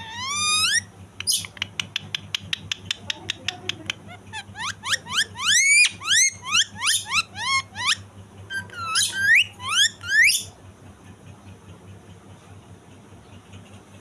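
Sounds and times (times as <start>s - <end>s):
parakeet whistling: 0.0s - 1.5s, 4.1s - 10.5s.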